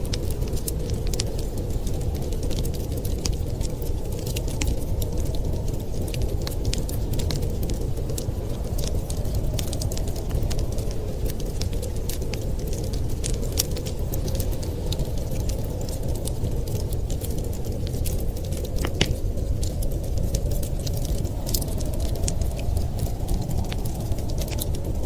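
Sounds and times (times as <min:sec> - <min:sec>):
blizzard wind rumble: 0:00.0 - 0:25.0
wood fire crackling and popping: 0:00.0 - 0:25.0.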